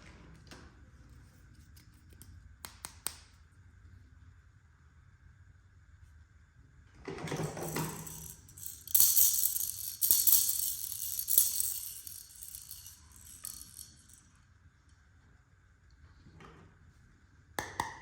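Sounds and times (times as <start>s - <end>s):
plastic toy pieces rattling: 7.4s - 14.2s.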